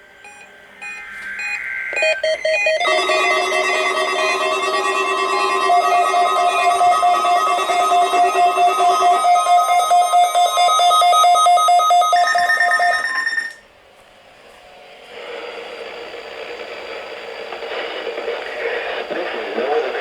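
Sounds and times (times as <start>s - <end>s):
rapid electronic beeping: 0.2s - 13.5s
radio static hiss: 15.1s - 20.0s.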